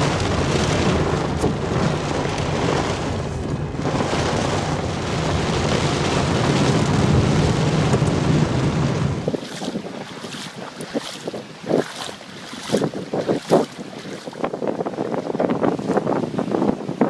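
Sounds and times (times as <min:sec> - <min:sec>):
deep rumble: 0:00.0 - 0:09.3
rain and wind rushing: 0:00.0 - 0:10.4.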